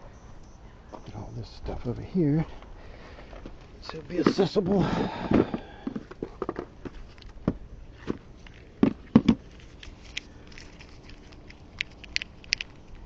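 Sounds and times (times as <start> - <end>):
tools clicking and knocking: 9.2 - 13.0.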